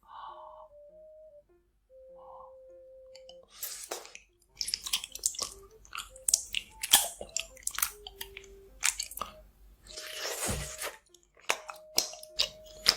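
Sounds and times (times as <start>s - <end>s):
crunchy chewing: 3.2s - 12.9s.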